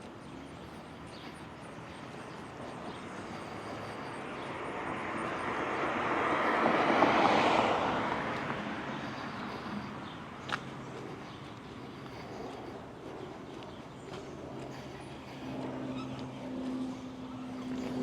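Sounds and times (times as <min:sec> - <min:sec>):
car passing by: 0:02.8 - 0:10.9.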